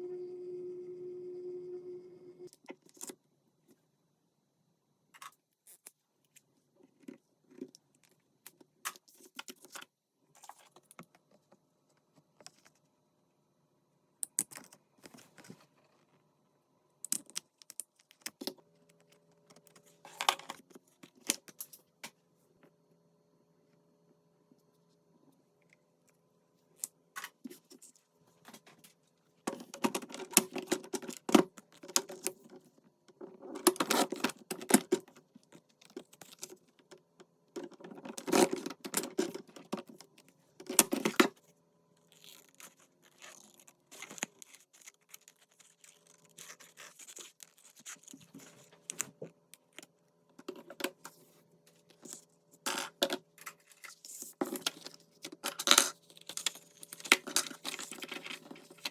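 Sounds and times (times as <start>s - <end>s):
paper and card rustling: 42.0s - 58.9s.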